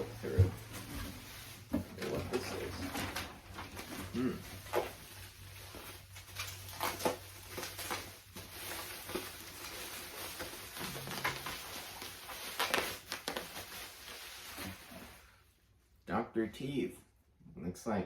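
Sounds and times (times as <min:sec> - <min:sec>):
toy packaging rustling: 0:02.0 - 0:14.9.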